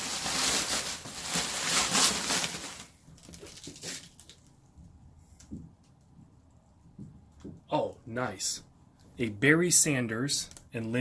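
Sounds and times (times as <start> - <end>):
packaging rustling and crinkling: 0.0 - 4.6.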